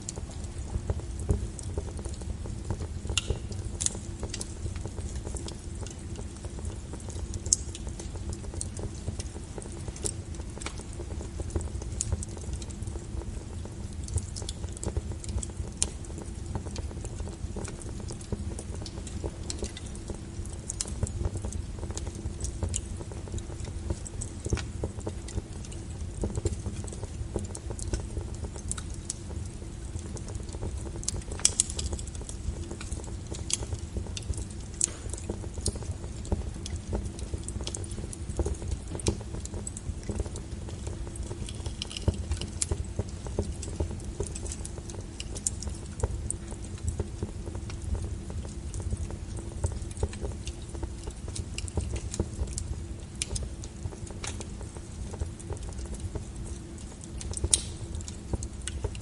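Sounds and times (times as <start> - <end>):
low rumble of flame: 0.0 - 59.0
wood fire crackling and popping: 0.0 - 59.0.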